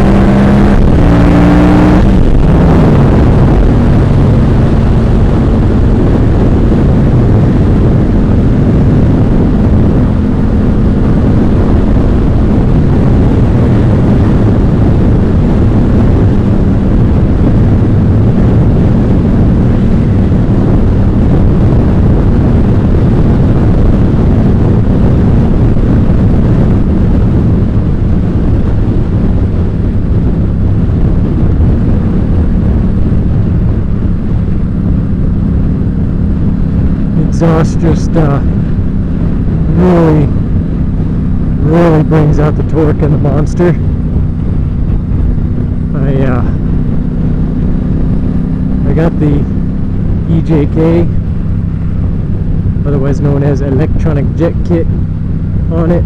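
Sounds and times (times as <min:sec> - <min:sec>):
motorcycle engine revving and cruising: 0:00.0 - 0:56.0
wind noise on microphone: 0:00.0 - 0:56.0.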